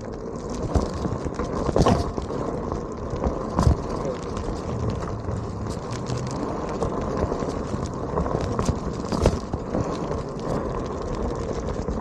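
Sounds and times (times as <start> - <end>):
small rocks ticking against board: 0.0 - 12.0
tyre crunching on gravel: 0.3 - 12.0.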